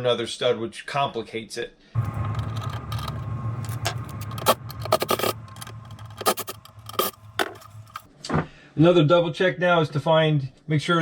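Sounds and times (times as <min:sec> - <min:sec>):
hand tools clicking and scraping: 0:02.0 - 0:08.1
steady low hum: 0:02.0 - 0:08.1.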